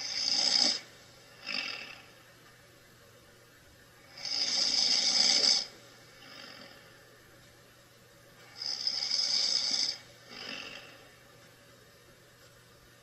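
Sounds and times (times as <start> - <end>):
man snoring: 0.0 - 2.1, 4.1 - 6.9, 8.5 - 11.1.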